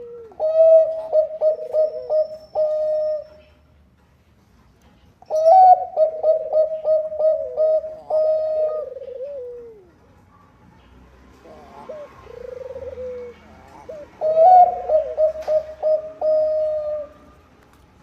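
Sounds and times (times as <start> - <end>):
dove cooing: 0.0 - 3.6, 5.3 - 10.0, 11.4 - 17.4.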